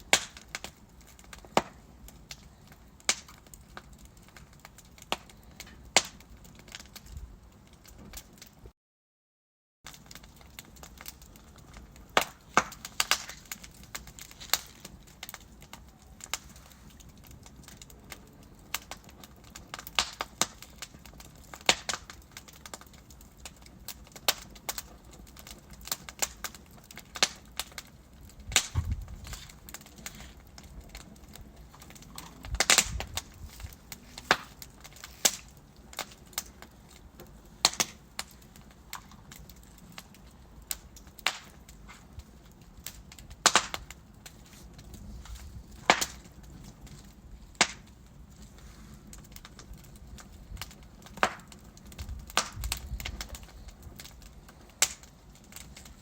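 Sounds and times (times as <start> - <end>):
fire crackling and popping: 0.0 - 8.7, 9.9 - 56.0
fire hissing: 10.9 - 22.8, 24.2 - 56.0.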